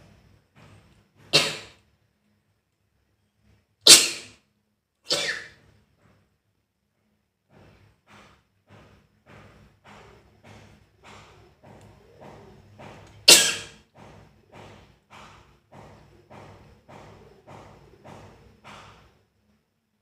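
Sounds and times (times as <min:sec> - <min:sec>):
person sneezing: 0:01.3 - 0:01.8, 0:03.8 - 0:04.4, 0:05.1 - 0:05.6, 0:13.3 - 0:13.8.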